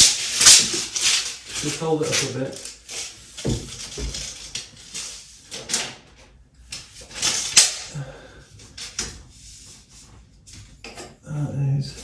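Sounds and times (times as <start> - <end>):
handling scrapes and knocks: 0.0 - 6.1.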